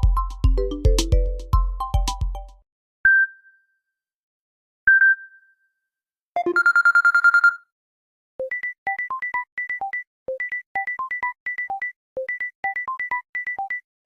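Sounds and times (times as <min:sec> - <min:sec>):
fast trill of beeps: 0:06.4 - 0:07.6.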